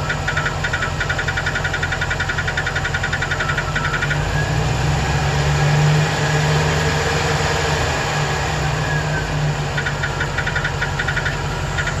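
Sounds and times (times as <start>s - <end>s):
rapid light engine ticking: 0.0s - 4.2s, 9.6s - 12.0s
van engine idling: 0.0s - 4.4s, 7.0s - 12.0s.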